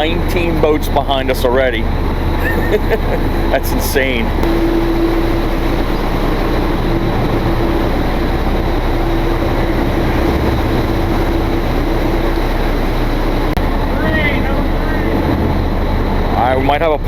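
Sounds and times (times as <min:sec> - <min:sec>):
boat engine droning: 0:00.0 - 0:17.0.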